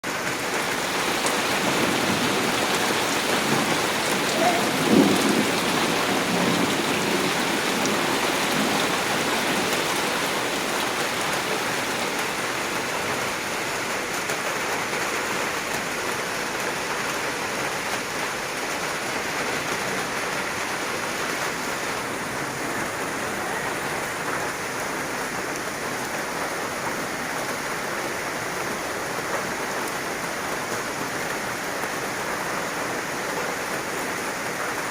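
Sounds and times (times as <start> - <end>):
heavy rain falling: 0.0 - 34.9
low rumble of thunder: 0.5 - 13.2.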